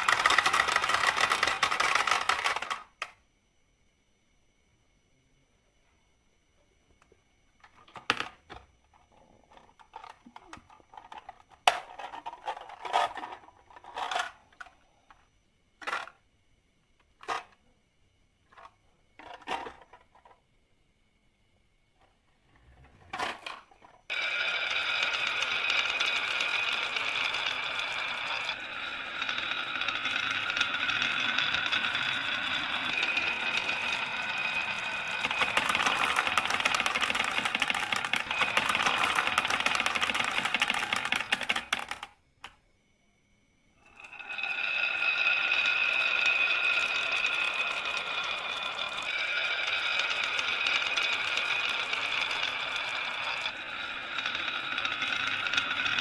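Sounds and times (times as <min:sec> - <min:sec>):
marbles rattling down track: 0:00.0 - 0:02.9, 0:24.1 - 0:42.1, 0:43.9 - 0:56.0.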